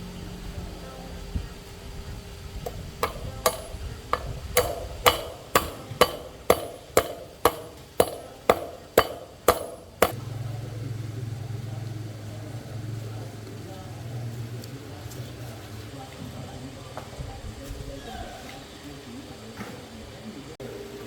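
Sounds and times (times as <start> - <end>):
steady low hum: 0.0 - 13.5
hammer striking metal: 2.7 - 10.2.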